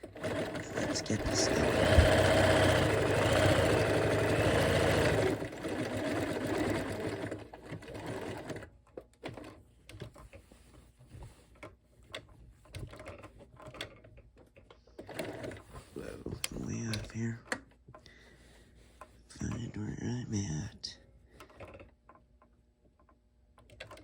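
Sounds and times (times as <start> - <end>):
sewing machine motor whine: 0.0 - 8.7.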